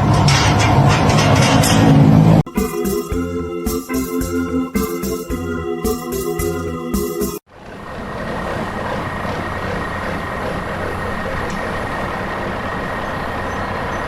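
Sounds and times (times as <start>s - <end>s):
organ music: 2.4s - 7.5s
heavy truck engine running: 5.3s - 14.0s.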